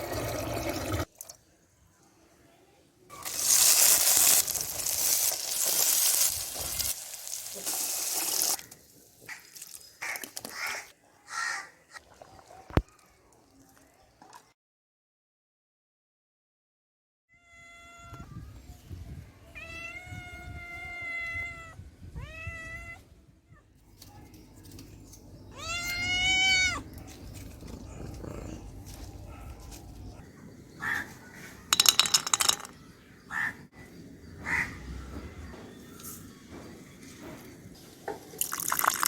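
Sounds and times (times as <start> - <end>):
animal drawn-out cries: 25.6 - 26.9, 27.6 - 28.8.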